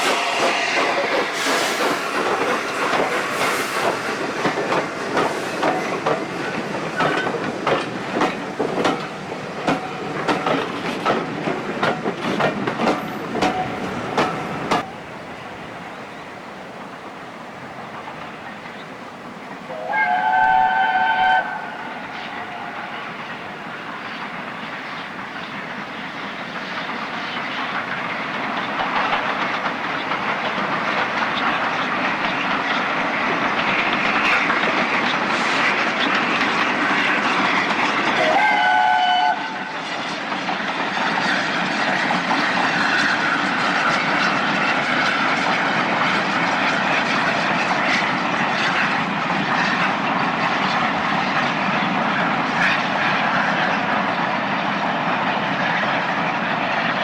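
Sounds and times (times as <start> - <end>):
steam whistle: 0.0 - 2.2, 19.7 - 23.1, 38.2 - 39.8
train rumble and wheel clatter: 0.0 - 57.0.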